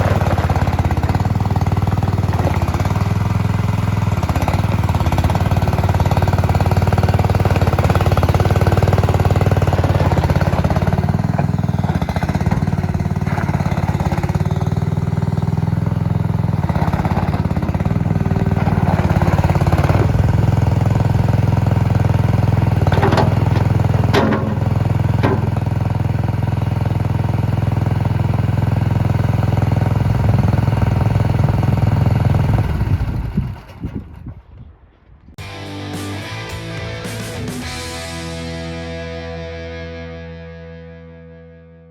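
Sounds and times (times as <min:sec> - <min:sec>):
loader engine running: 0:00.0 - 0:34.8, 0:35.4 - 0:41.6
sharp knocks: 0:22.9 - 0:25.6.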